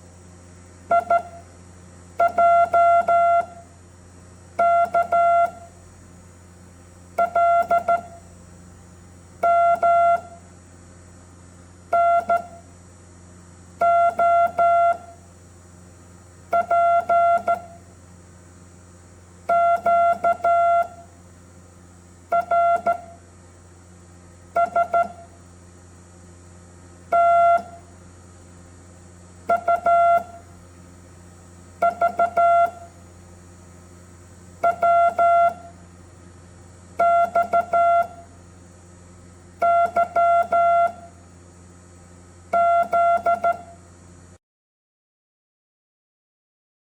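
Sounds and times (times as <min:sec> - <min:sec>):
morse code beeps: 0:00.9 - 0:01.3, 0:04.6 - 0:05.6, 0:07.2 - 0:08.1, 0:16.6 - 0:17.7, 0:22.3 - 0:23.1, 0:24.6 - 0:25.2, 0:27.1 - 0:27.7, 0:29.5 - 0:30.4, 0:31.8 - 0:32.9, 0:34.6 - 0:35.6, 0:37.0 - 0:38.2, 0:39.6 - 0:41.0, 0:42.6 - 0:43.7.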